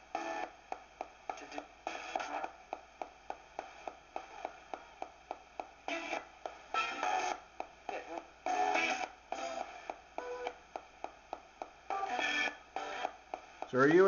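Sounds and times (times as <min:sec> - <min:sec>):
radio ticking between channels: 0:00.0 - 0:14.0
broadcast sound snatches: 0:00.1 - 0:14.0
radio static: 0:01.3 - 0:05.0, 0:05.9 - 0:10.7, 0:11.9 - 0:14.0.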